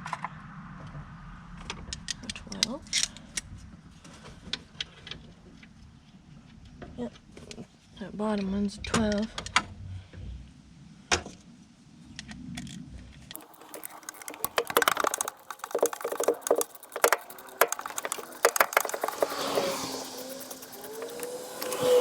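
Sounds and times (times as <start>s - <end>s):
socket ratchet clicking: 13.4s - 22.0s.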